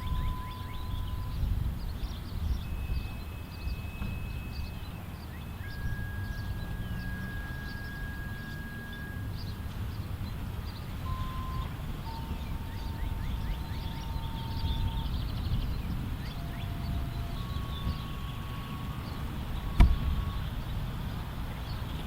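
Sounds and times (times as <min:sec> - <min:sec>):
faint steady tones: 0:00.0 - 0:22.0
low rumble: 0:00.0 - 0:22.0
sharp knock: 0:19.8 - 0:20.1.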